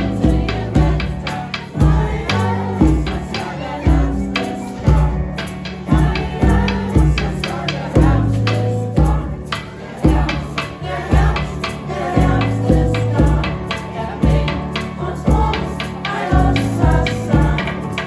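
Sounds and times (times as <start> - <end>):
group singing in unison: 0.0 - 18.0
low steady beat: 0.0 - 18.0.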